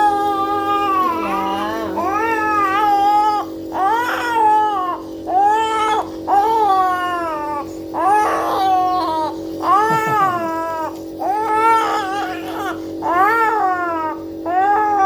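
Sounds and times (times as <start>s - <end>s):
nebuliser compressor hum: 0.0s - 15.0s
young child crying: 3.8s - 15.0s.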